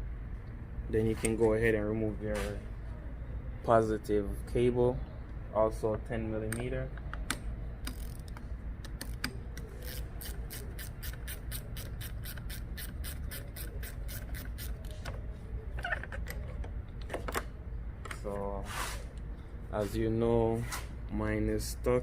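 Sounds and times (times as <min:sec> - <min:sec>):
ratchet clicking: 0:07.3 - 0:15.0.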